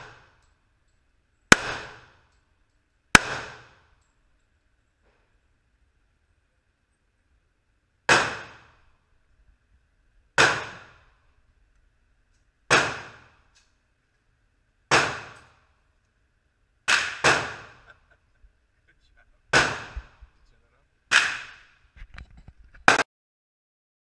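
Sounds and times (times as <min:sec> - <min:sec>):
gunshots with echo: 0:01.5 - 0:02.2, 0:03.2 - 0:03.8, 0:10.4 - 0:11.0, 0:12.7 - 0:13.4, 0:16.9 - 0:17.9, 0:19.5 - 0:20.2, 0:21.1 - 0:21.7.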